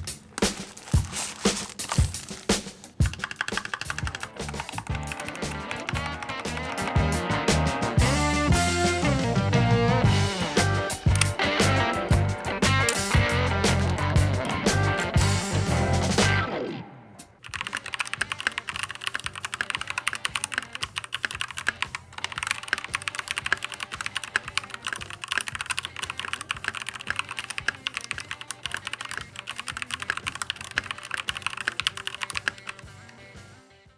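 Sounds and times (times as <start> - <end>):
mechanical keyboard typing: 0.0 - 7.1, 11.1 - 12.0, 12.6 - 15.0, 17.4 - 33.2
background music: 0.0 - 33.9.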